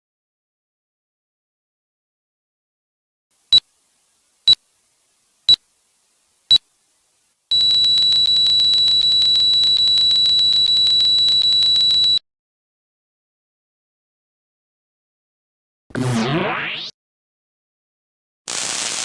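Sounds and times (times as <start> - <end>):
heart monitor beeps: 7.5 - 12.2
heart monitor flatline tone: 7.5 - 12.2.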